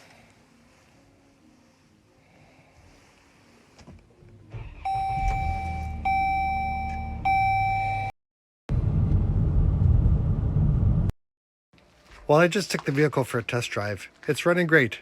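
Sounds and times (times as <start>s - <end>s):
dashboard warning chime: 4.8s - 8.1s
low rumble: 8.7s - 11.1s.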